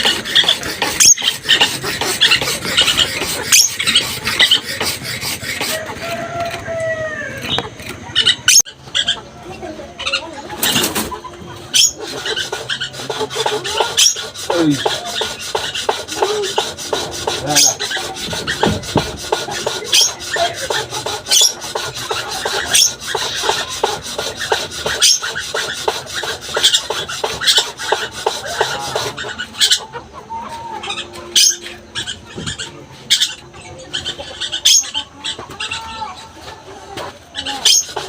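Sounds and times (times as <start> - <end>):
shrill bird squeaks: 0.0 - 4.7, 11.7 - 16.0, 19.6 - 28.1, 30.8 - 35.8
lorikeet chattering: 0.0 - 5.6, 11.6 - 30.2, 30.8 - 36.0, 37.3 - 38.0.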